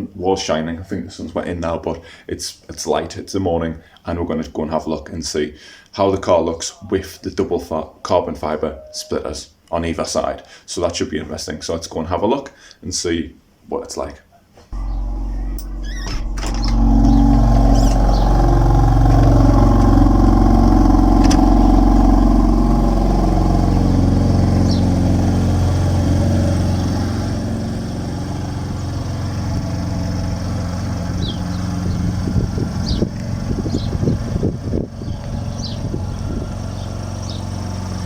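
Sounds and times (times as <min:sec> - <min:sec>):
car engine running: 0:14.8 - 0:38.0.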